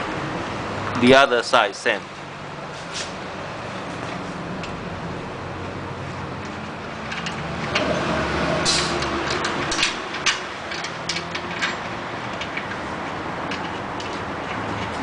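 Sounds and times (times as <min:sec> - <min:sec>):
metal clicks and knocks: 0:06.4 - 0:15.0.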